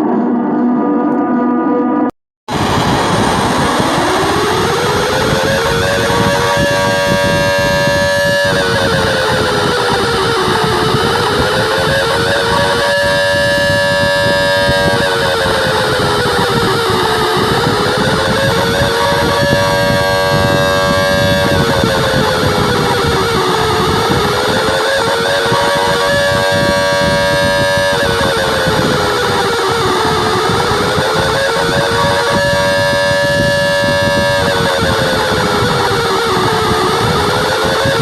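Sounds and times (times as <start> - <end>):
alarm siren wailing: 0.0 - 38.0
steady wash of noise: 2.5 - 38.0.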